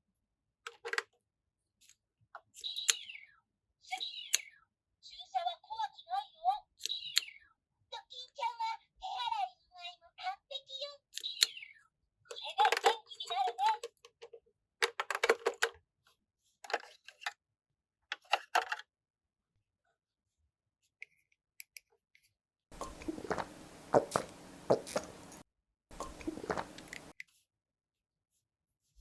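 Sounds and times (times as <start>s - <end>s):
plastic toy pieces clicking: 0.7s - 1.2s, 2.5s - 3.1s, 6.8s - 7.3s, 11.1s - 11.6s, 12.6s - 15.8s.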